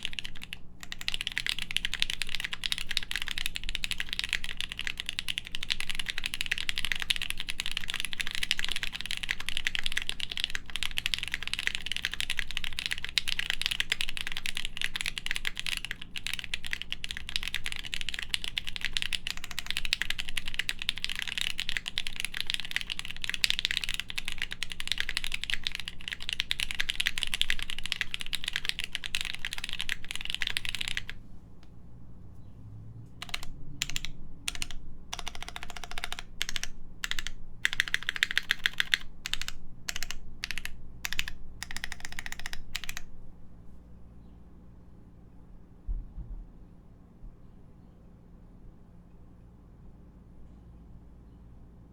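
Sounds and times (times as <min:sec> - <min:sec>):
fast typing on mechanical keyboard: 0:00.0 - 0:31.2, 0:33.2 - 0:43.1.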